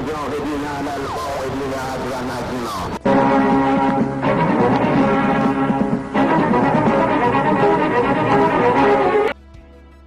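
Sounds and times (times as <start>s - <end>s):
orchestral music held chords: 3.0s - 9.6s.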